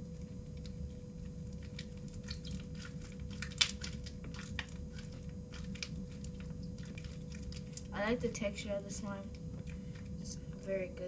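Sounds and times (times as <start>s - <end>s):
slime squishing: 0.2s - 10.9s
beads crackling in slime: 1.6s - 8.0s.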